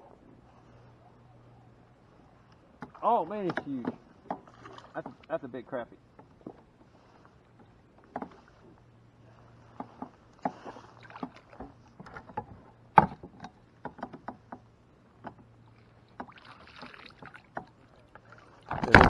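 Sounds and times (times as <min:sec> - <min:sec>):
faint low hum: 0:00.0 - 0:19.0
knocks and clicks of handling gear: 0:02.8 - 0:05.3, 0:06.1 - 0:06.9, 0:07.5 - 0:08.4, 0:11.5 - 0:15.5, 0:18.7 - 0:19.0.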